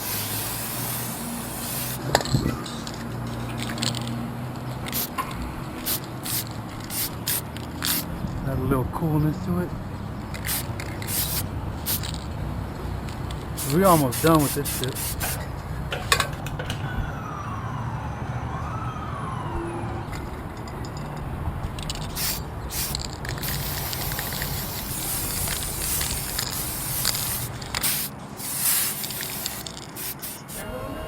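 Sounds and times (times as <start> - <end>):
spray paint cans hissing: 0.0 - 3.0, 4.8 - 5.2, 5.8 - 8.1, 10.3 - 12.3, 13.0 - 15.5, 21.8 - 30.7
distant siren wailing: 16.6 - 21.6.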